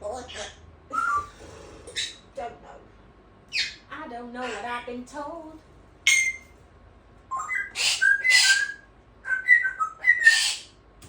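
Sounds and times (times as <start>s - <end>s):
parrot whistling: 0.4s - 1.4s, 6.1s - 6.5s, 7.3s - 10.7s.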